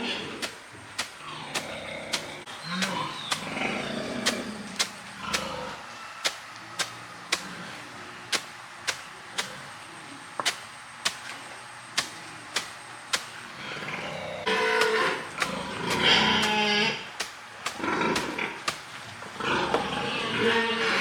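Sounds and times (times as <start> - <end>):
pig calling: 13.5 - 18.8, 19.4 - 21.0.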